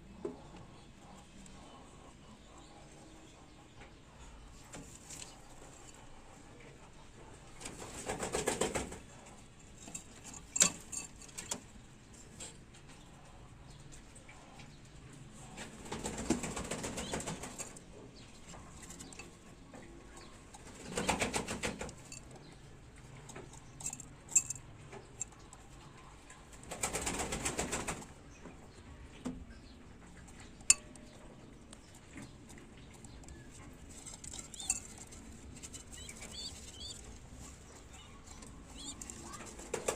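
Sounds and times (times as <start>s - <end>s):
pigeon wings fluttering: 7.7s - 9.0s, 20.8s - 21.9s, 26.7s - 28.0s.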